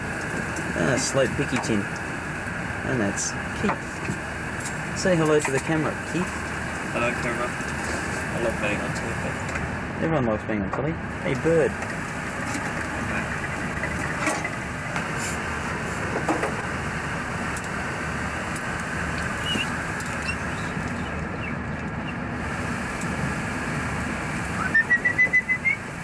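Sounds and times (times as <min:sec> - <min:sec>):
machinery and ventilation rush: 0:00.0 - 0:26.0
budgerigar chirping: 0:19.4 - 0:22.2.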